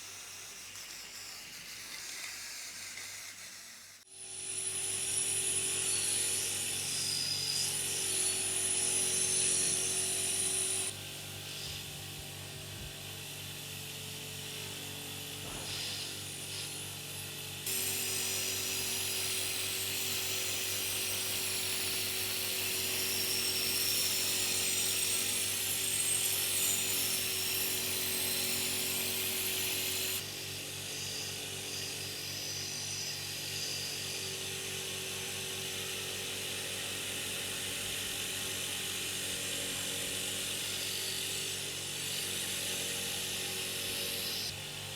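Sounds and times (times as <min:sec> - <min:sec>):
electric power tool running: 0:04.1 - 0:44.9.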